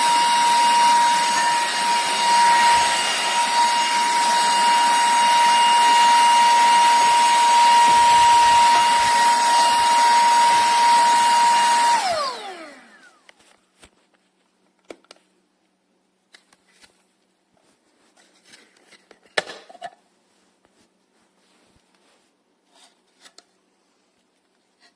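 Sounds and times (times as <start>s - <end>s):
handheld vacuum cleaner whining: 0.0s - 13.5s.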